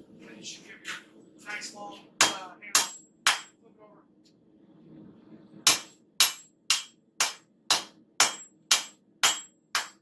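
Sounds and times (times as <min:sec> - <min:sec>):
hammer striking metal on anvil: 0:02.2 - 0:03.6, 0:05.7 - 0:10.0.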